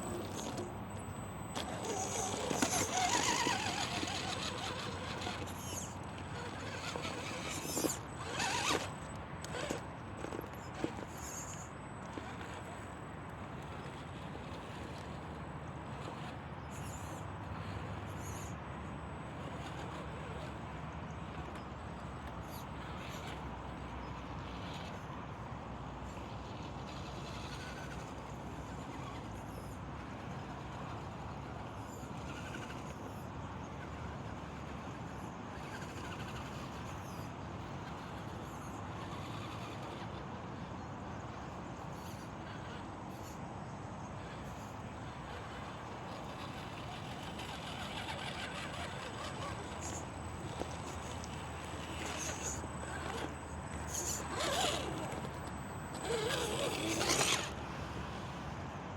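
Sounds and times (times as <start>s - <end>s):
tyres crunching over rough ground: 0.0s - 18.4s, 45.3s - 58.2s
toy car motor and drivetrain: 0.0s - 18.6s, 19.2s - 58.6s.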